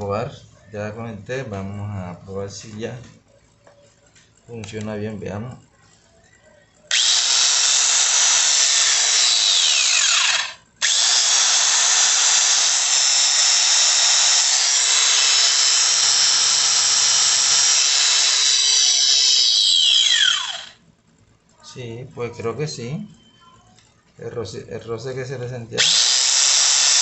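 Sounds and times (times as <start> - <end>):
angle grinder running: 6.9 - 20.8, 25.8 - 27.0
grinder winding down whine: 6.9 - 20.8, 25.8 - 27.0.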